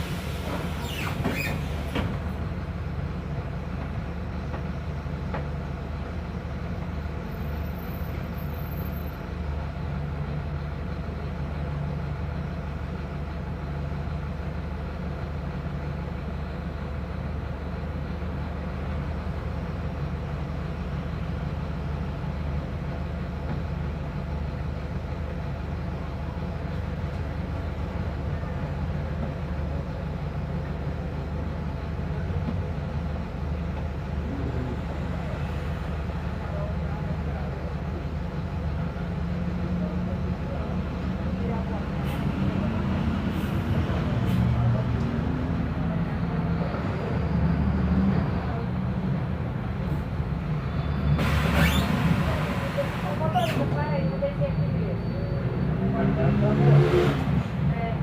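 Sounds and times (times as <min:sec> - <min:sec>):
bus diesel engine running: 0:00.0 - 0:58.0.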